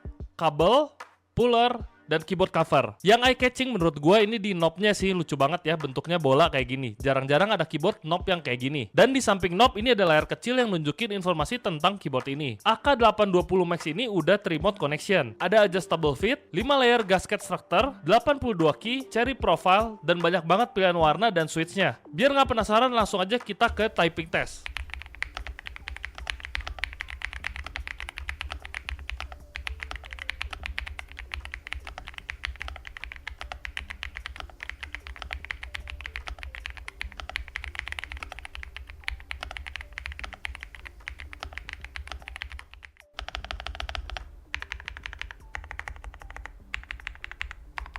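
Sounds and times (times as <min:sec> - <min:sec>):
fast typing on mechanical keyboard: 0:23.8 - 0:47.9.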